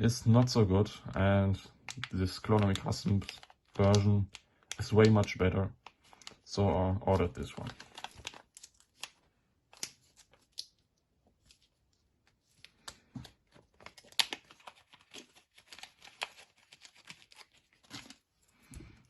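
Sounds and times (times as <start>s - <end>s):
plastic packaging crinkling: 1.7s - 10.8s, 11.4s - 18.4s
plastic tearing: 1.8s - 10.8s, 12.6s - 18.3s.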